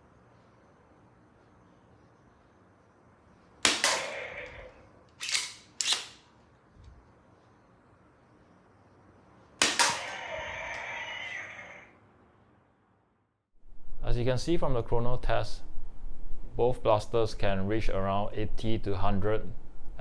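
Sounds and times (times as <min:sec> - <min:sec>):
dart blaster snapping cracks: 0:03.6 - 0:06.3, 0:09.6 - 0:10.9.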